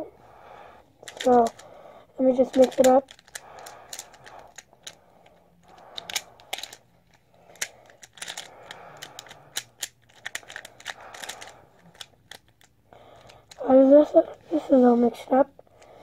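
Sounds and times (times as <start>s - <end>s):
plastic puzzle clicking: 1.0s - 1.7s, 2.4s - 13.6s.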